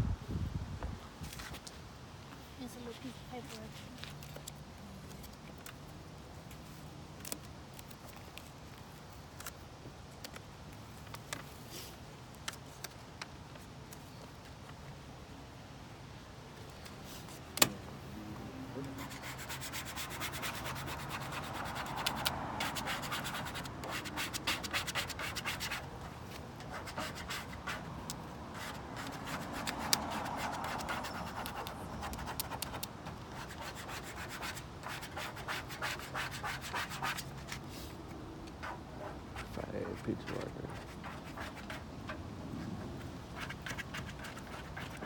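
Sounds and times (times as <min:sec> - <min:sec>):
scratchy rubbing on car body: 0:19.0 - 0:38.0, 0:43.4 - 0:45.0.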